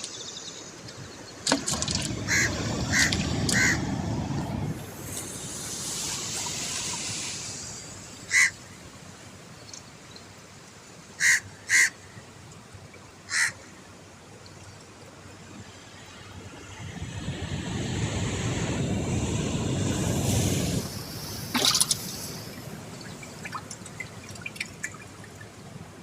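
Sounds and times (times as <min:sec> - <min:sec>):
low rumbling noise: 0:01.5 - 0:08.3, 0:16.1 - 0:24.4
bird harsh calls: 0:02.1 - 0:03.9, 0:08.3 - 0:08.6
hiss: 0:02.6 - 0:08.6, 0:17.3 - 0:22.9.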